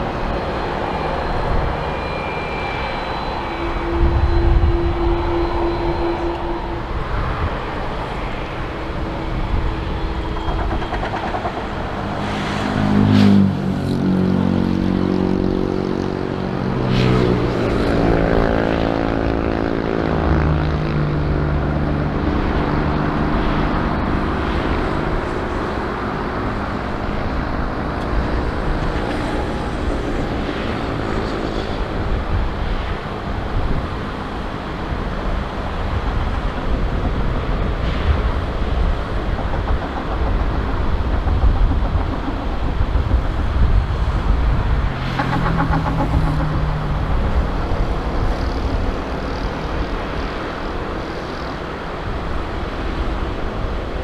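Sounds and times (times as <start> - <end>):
airliner engines running: 0.0 - 54.0.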